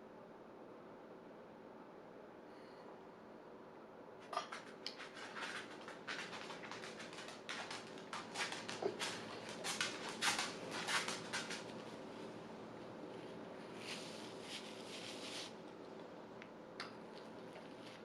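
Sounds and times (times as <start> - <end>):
person eating clicks and smacks: 16.4 - 17.6.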